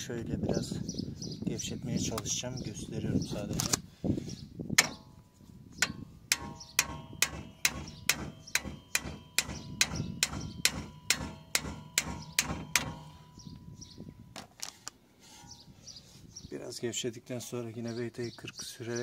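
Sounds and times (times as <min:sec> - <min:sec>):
hammer striking metal bolt: 0:04.8 - 0:05.2, 0:05.8 - 0:13.4.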